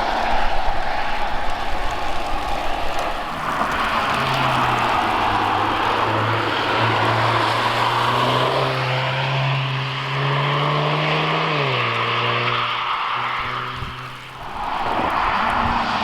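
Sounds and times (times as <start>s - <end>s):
car engine under load: 0.0s - 16.0s.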